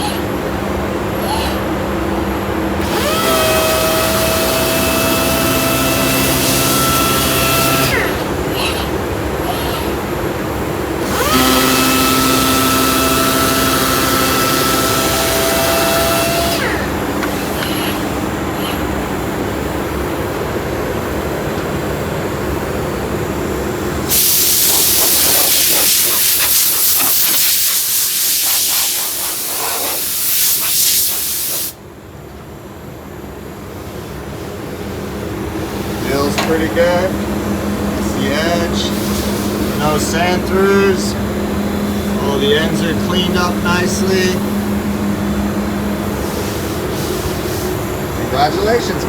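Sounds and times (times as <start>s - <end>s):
steady hum: 0.0s - 49.0s
sanding machine hiss: 2.8s - 8.4s, 10.8s - 19.0s, 23.9s - 31.8s, 37.8s - 49.0s
multi-tone whine: 34.5s - 49.0s.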